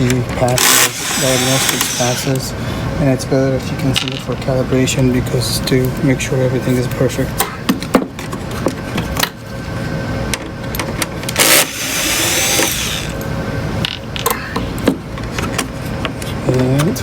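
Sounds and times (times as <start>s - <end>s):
faint steady hum: 0.0s - 17.0s
rasping burst: 0.6s - 2.4s, 11.4s - 13.2s.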